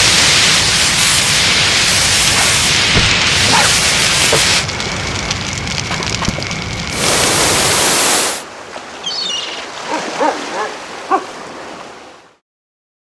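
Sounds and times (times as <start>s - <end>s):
loud rush of spraying water: 0.0s - 8.7s
soft wave-like wash: 6.8s - 12.4s.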